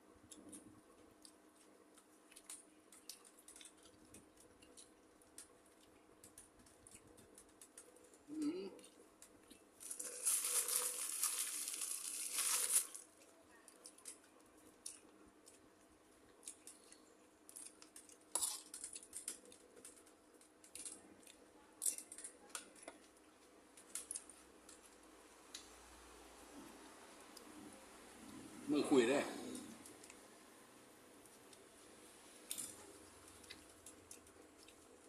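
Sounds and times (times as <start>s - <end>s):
light clicks and taps of eating: 0.2s - 9.7s, 13.2s - 25.8s, 29.6s - 30.2s, 32.5s - 35.0s
crinkling rustling handling noise: 9.2s - 15.0s.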